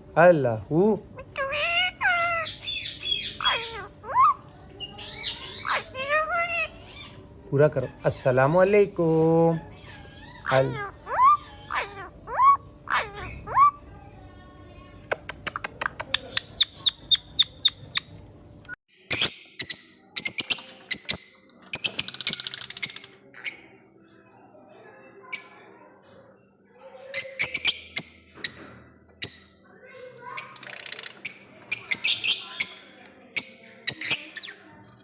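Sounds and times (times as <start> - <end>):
parrots squawking and chattering: 0.6 - 14.1, 15.1 - 18.2, 19.0 - 24.0, 25.2 - 35.0
parrot speech-like calls: 1.1 - 8.0, 9.5 - 14.2, 26.8 - 28.6, 29.2 - 34.8
sharp clicks: 15.1 - 16.2.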